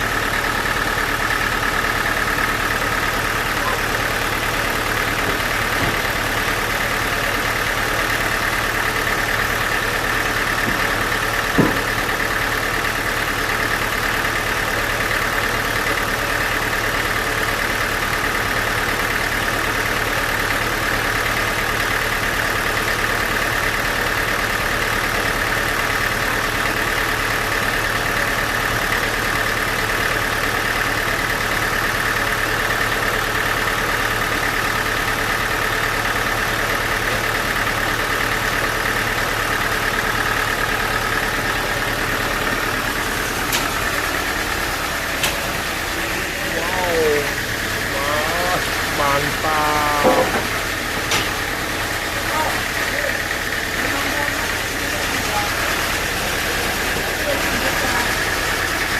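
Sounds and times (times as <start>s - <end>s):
sawmill machinery droning: 0.0s - 58.9s.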